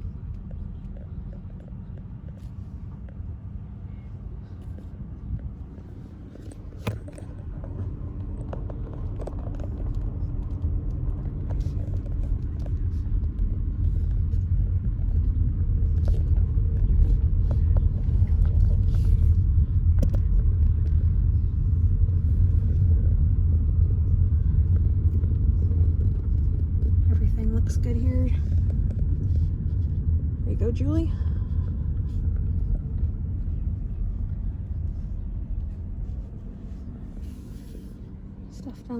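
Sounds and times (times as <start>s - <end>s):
car driving rumble inside cabin: 0.0s - 38.9s.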